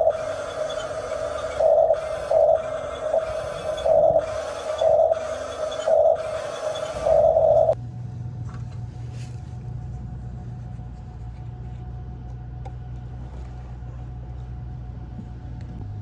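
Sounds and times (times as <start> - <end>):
loud high sound: 0.0 - 7.8
faint whine: 0.0 - 16.0
low motor hum: 0.0 - 16.0.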